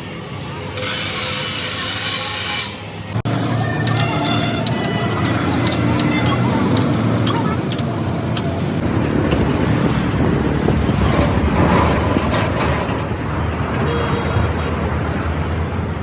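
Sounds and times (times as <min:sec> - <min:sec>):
road traffic rumble: 0:00.0 - 0:16.0
brief high tone: 0:13.8 - 0:15.0.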